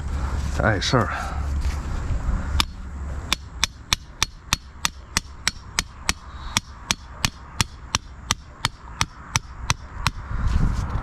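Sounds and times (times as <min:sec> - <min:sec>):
hammer driving tent stake: 0:02.6 - 0:10.2.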